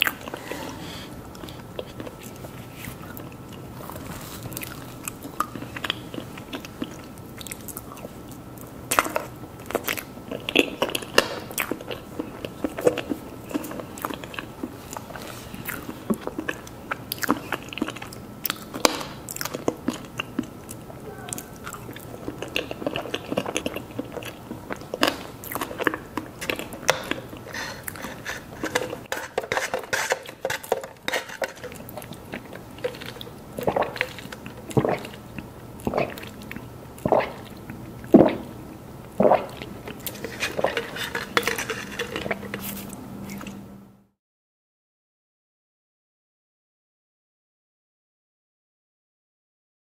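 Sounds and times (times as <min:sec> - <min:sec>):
person biting and chewing: 0:21.4 - 0:35.2, 0:39.2 - 0:43.6.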